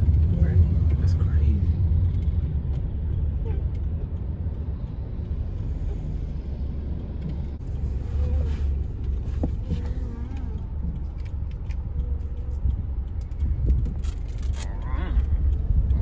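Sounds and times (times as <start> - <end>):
road vehicle rumble from inside: 0.0 - 16.0.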